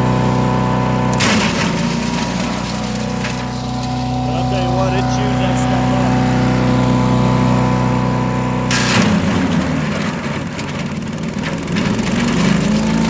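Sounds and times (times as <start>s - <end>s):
wood chipper engine running: 0.0s - 13.0s
branch chipping noise: 1.1s - 6.7s.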